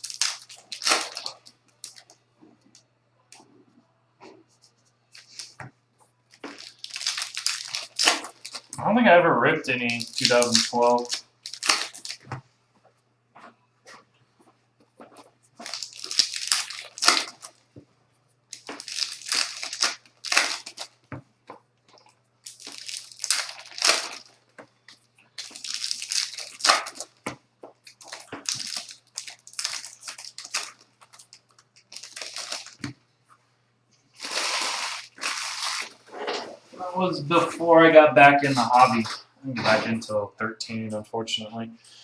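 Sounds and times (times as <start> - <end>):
wrappers torn and crinkled: 0.0 - 2.2, 5.2 - 5.6, 6.3 - 8.8, 9.7 - 12.3, 15.0 - 17.7, 18.5 - 21.1, 21.9 - 33.0, 34.2 - 36.2.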